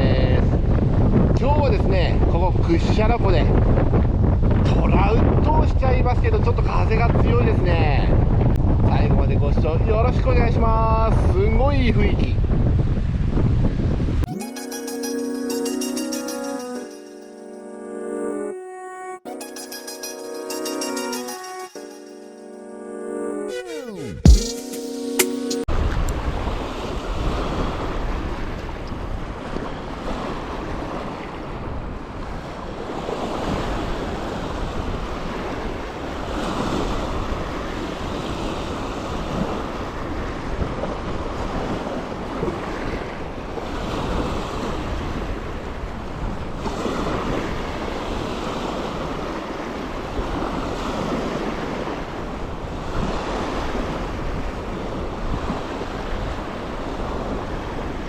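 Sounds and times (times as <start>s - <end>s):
wind buffeting microphone: 0.0s - 14.3s, 25.7s - 58.0s
waves washing on shore: 25.7s - 58.0s.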